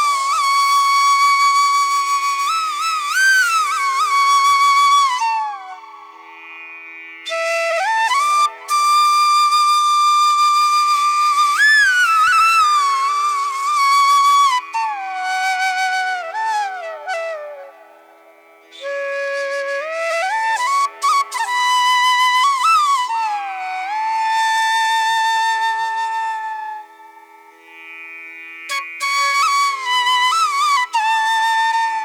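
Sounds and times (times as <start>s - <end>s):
slow flute melody: 0.0s - 6.2s, 7.3s - 18.1s, 18.7s - 27.3s, 28.7s - 32.0s.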